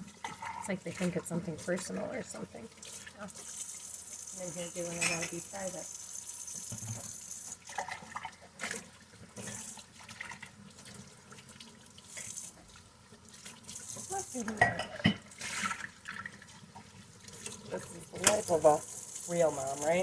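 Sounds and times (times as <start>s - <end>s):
tap running into sink: 6.5s - 8.8s, 18.2s - 18.7s
dishes knocking in water: 14.4s - 15.3s.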